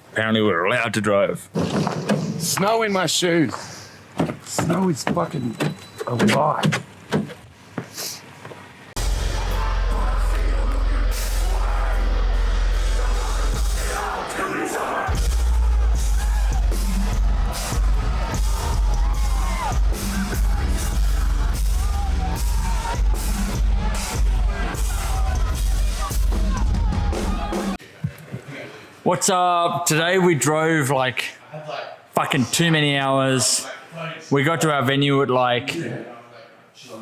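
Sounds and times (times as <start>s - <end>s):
loud heavy music with vocals: 9.0s - 27.8s.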